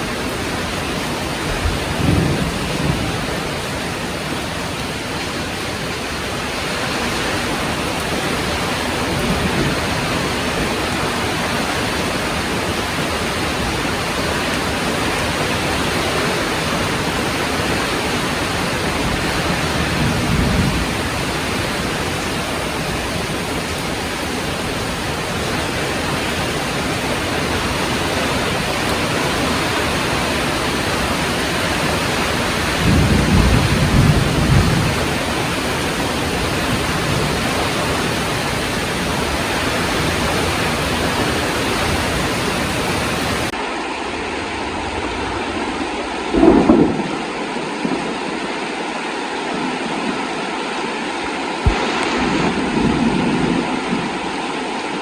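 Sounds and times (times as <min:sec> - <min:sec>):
heavy rain falling: 0:00.0 - 0:55.0
thunder rumbling: 0:00.1 - 0:05.9, 0:06.9 - 0:43.6, 0:44.3 - 0:48.4, 0:51.7 - 0:54.5.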